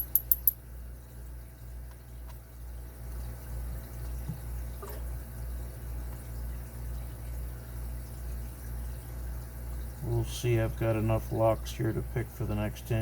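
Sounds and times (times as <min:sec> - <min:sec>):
metallic lock clicks: 0:00.0 - 0:00.6
steady low hum: 0:00.0 - 0:13.0.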